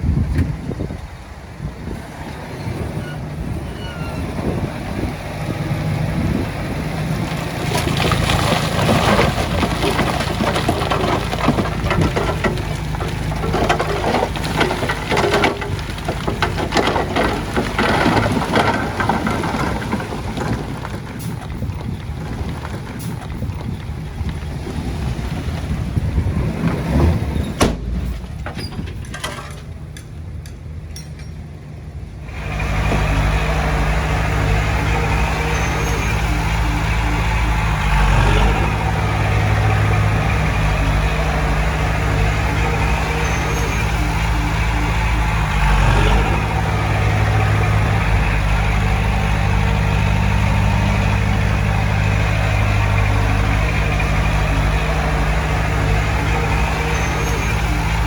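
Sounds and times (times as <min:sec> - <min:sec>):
heavy diesel machinery running: 0:00.0 - 0:58.0
stones crunching and rattling: 0:07.2 - 0:29.7.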